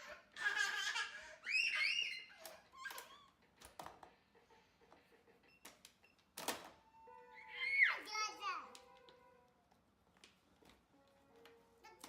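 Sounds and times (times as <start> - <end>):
young child squealing: 1.4 - 3.3, 7.0 - 8.2.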